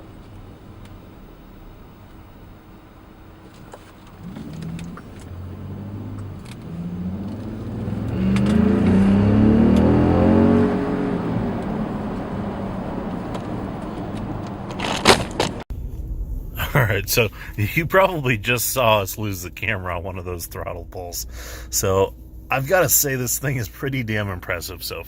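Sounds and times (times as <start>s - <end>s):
engine accelerating hard: 3.5s - 15.6s.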